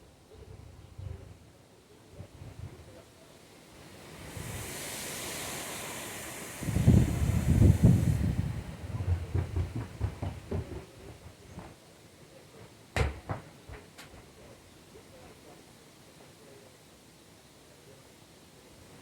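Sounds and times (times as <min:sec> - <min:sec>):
wind rushing through pine trees: 0:00.0 - 0:12.3
wind buffeting on microphone: 0:06.6 - 0:11.6.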